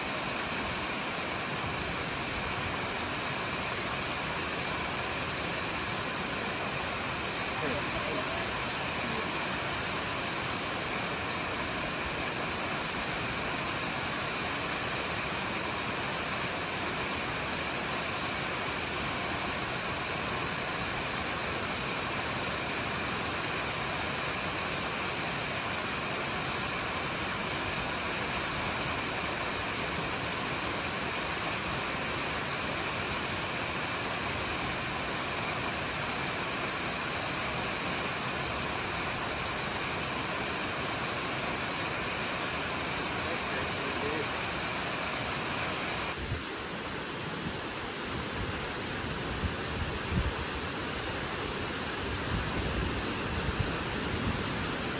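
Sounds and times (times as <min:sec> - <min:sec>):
waterfall rushing: 0:00.0 - 0:54.9.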